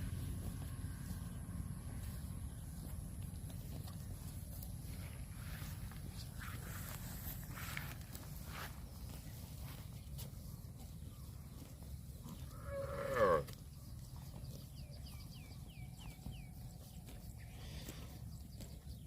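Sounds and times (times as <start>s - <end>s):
cow mooing: 12.4s - 13.6s.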